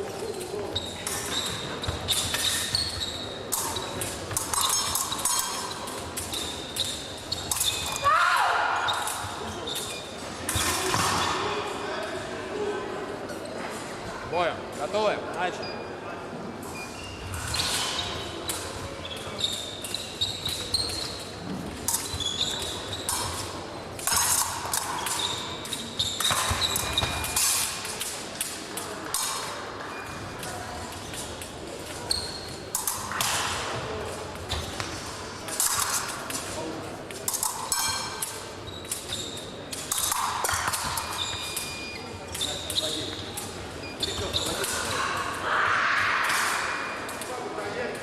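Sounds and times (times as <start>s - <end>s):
footwork thumping and squeaking: 0.0s - 8.0s, 8.8s - 11.7s, 16.7s - 27.9s, 29.9s - 36.2s, 37.4s - 45.0s
fencing blades clashing: 0.0s - 11.9s, 16.6s - 45.4s, 46.0s - 48.0s.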